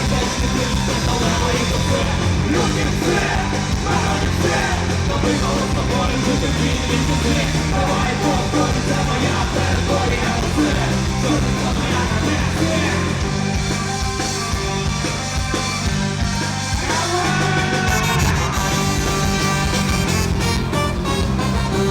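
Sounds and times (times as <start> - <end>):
live punk rock band: 0.0 - 21.9.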